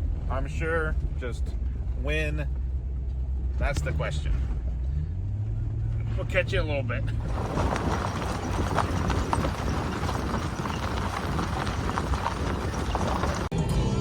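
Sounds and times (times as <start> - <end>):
vehicle engine low rumble: 0.0 - 14.0
vehicle knocks and rattles: 7.1 - 13.5.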